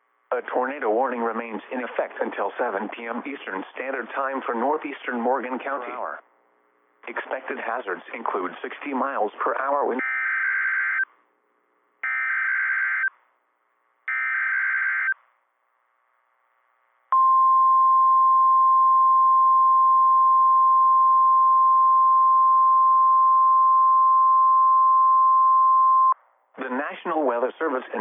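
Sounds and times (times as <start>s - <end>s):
faint radio hiss: 0.1s - 10.0s, 26.5s - 28.0s
steady warning alarm tone: 10.0s - 11.0s, 12.0s - 13.1s, 14.1s - 15.2s.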